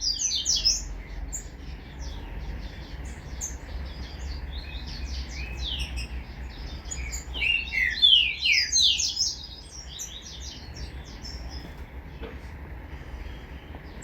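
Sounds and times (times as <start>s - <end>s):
bird singing: 0.0s - 14.0s.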